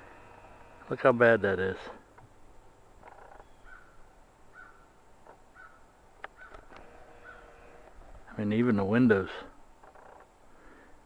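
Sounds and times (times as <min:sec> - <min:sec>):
faint bird calls: 0:03.0 - 0:07.9.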